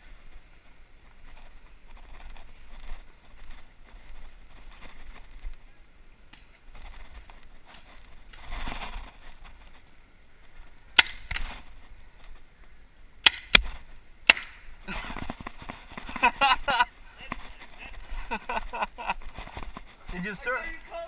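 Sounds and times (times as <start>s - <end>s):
paintball pistol firing: 11.0s - 11.5s, 13.2s - 14.7s.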